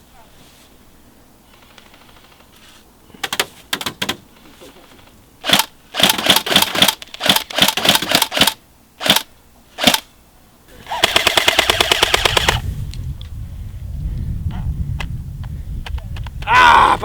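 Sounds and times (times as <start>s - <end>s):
airsoft rifle full-auto burst: 4.4s - 10.1s, 10.8s - 12.6s
airsoft gun single shots: 5.4s - 10.1s.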